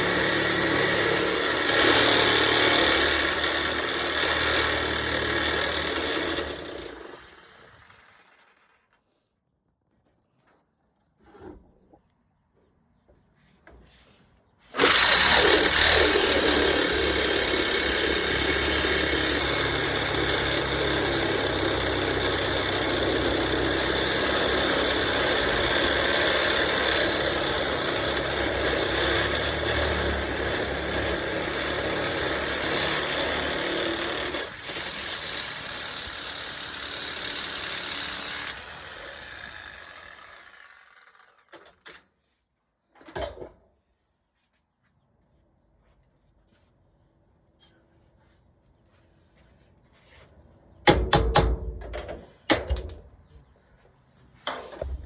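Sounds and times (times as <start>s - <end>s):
power cutting tool sawing metal: 0.0s - 7.4s, 14.8s - 41.6s.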